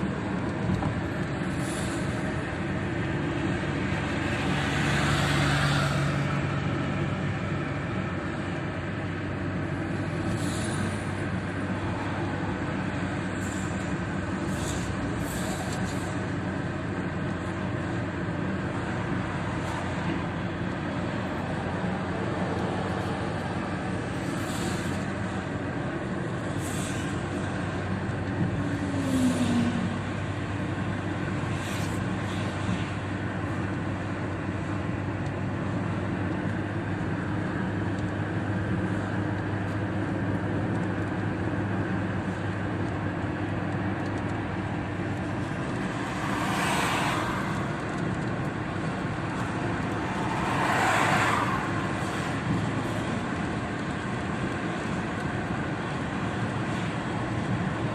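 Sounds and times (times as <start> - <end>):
car engine and tyre noise: 0.0 - 57.9.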